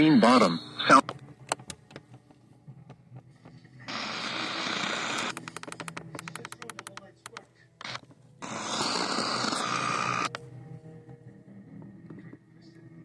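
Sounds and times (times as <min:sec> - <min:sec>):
radio static with crackles: 0:03.8 - 0:10.4
sharp clicks: 0:05.1 - 0:08.0.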